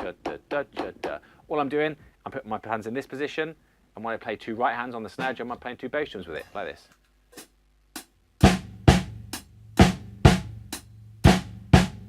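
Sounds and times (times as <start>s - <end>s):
bass drum: 8.0s - 12.0s.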